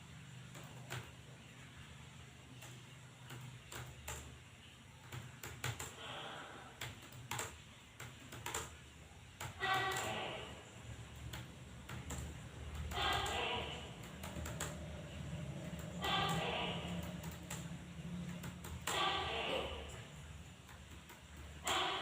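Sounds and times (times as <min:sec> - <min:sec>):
keyboard keys clicking: 0:05.0 - 0:05.9, 0:06.8 - 0:08.8, 0:11.2 - 0:19.0.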